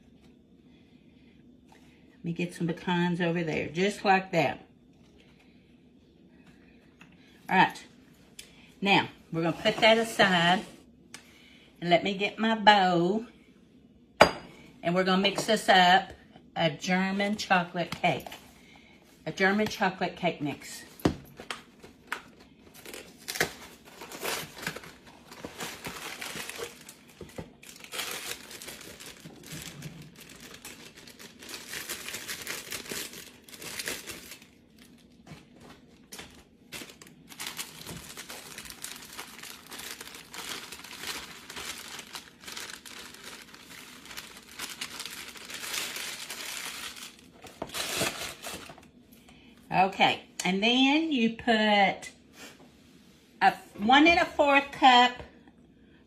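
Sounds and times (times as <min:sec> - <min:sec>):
plastic bag crinkling: 0:22.7 - 0:48.9.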